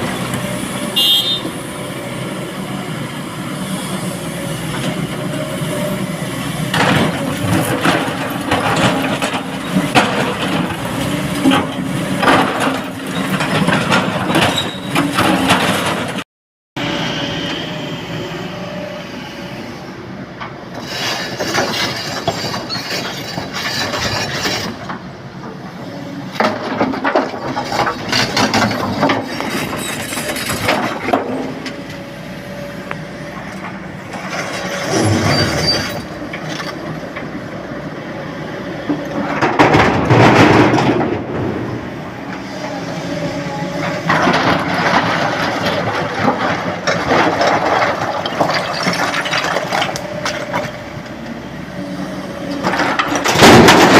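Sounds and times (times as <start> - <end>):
heavy machinery running: 0.0 - 16.2, 16.8 - 53.9
rock clattering into steel truck: 39.2 - 41.8, 52.6 - 53.9.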